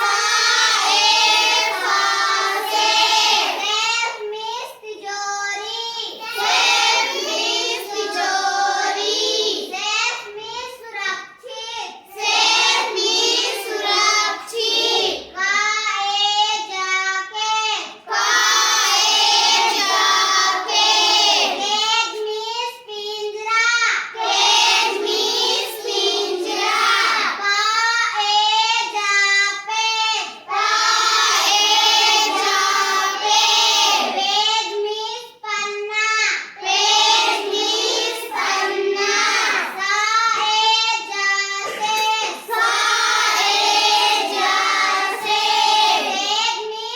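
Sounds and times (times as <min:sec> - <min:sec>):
child singing: 0:00.0 - 0:46.9.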